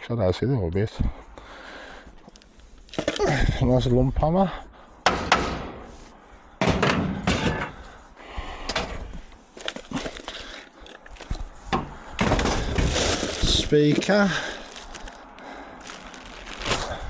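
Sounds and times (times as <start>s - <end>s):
scrap clattering and rattling: 2.9s - 3.6s, 5.1s - 15.2s.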